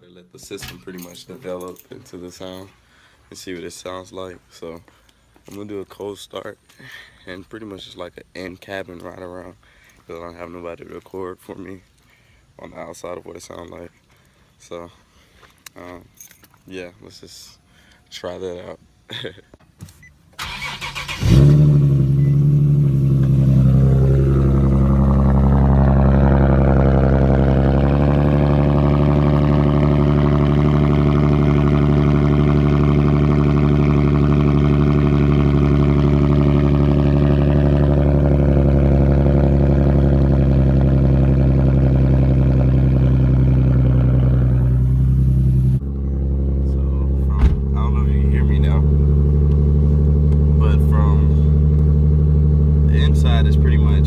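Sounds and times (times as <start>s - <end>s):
engine cranking: 20.4s - 21.7s
car engine idling: 20.4s - 54.0s.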